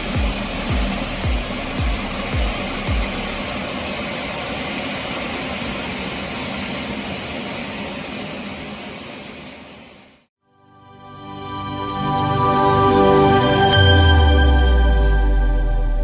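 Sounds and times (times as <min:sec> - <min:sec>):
jet engine noise: 0:00.0 - 0:10.3.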